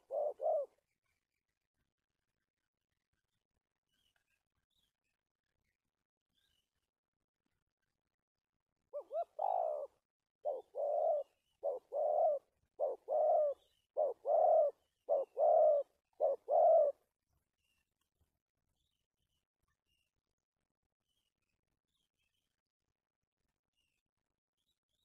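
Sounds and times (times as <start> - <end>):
dove cooing: 0.0 - 0.8, 8.9 - 17.0.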